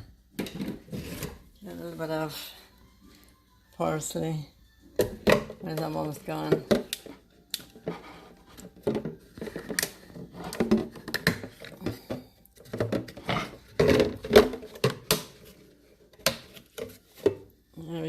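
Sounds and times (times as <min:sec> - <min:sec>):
kitchen containers and utensils clattering: 0:00.4 - 0:01.5, 0:05.0 - 0:17.5.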